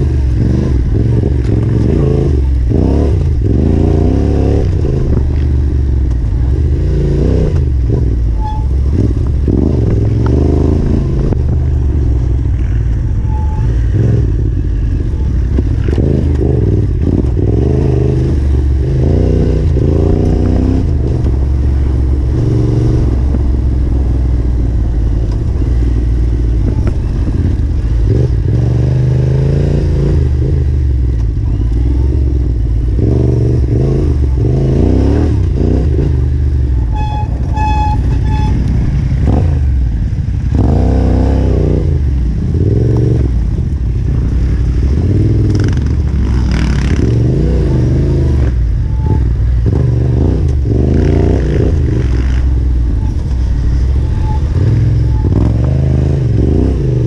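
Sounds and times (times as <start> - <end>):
motorcycle engine revving: 0.0 - 57.0
motorcycle clattering over rough trail: 37.3 - 56.8.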